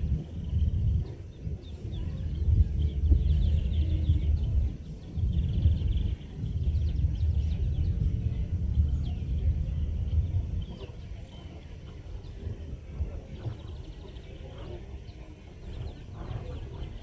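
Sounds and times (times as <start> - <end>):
distant bass music: 0.0 - 17.0
small birds chirping: 0.0 - 17.0.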